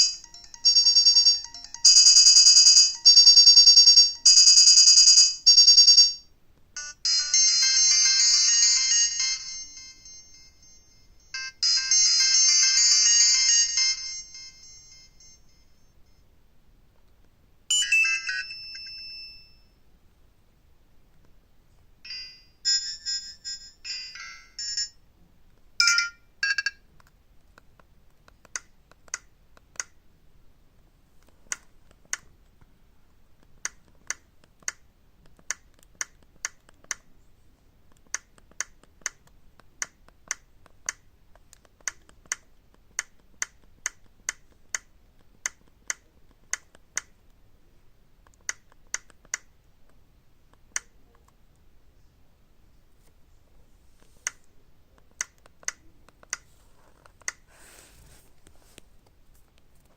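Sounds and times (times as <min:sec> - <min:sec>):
phone beep melody: 0:00.0 - 0:06.2, 0:06.8 - 0:15.7, 0:17.7 - 0:19.6, 0:25.8 - 0:26.8
keypad clicks: 0:25.8 - 0:30.0, 0:37.9 - 0:47.4, 0:48.2 - 0:51.6.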